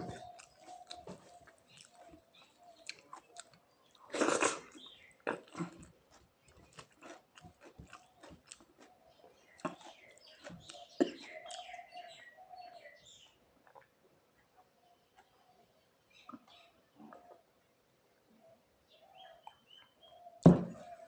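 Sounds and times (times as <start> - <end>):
wet chewing mouth clicks and smacks: 0.0 - 8.9, 9.5 - 11.8.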